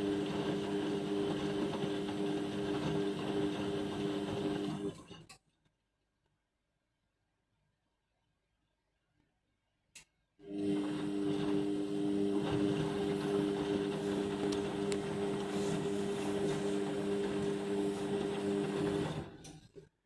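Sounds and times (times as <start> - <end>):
washing machine motor hum: 0.0 - 5.2, 10.4 - 19.8.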